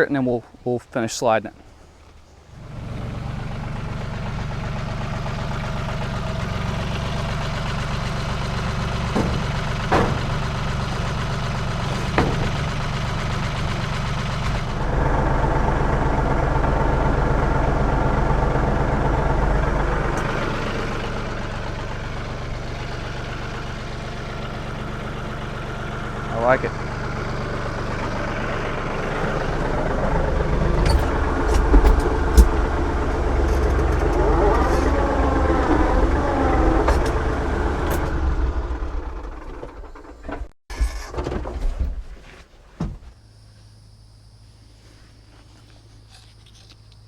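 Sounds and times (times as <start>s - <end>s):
tractor engine running: 0.0s - 41.1s
metal clanks: 6.7s - 14.8s, 29.2s - 35.2s.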